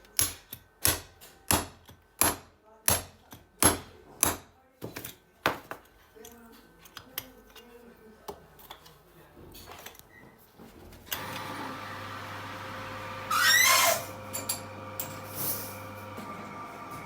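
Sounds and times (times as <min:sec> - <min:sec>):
workshop machine humming: 0:11.1 - 0:17.0
wavering screech: 0:13.3 - 0:14.1.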